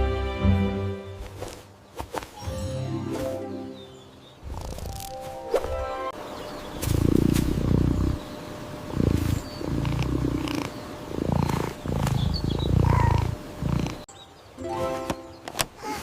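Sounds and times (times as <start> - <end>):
cat purring: 6.7 - 14.1.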